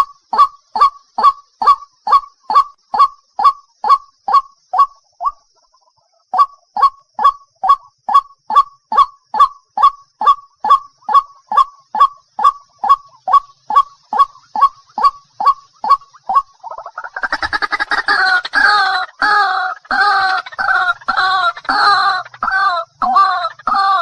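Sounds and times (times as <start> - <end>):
waterhen calling: 0.0 - 24.0.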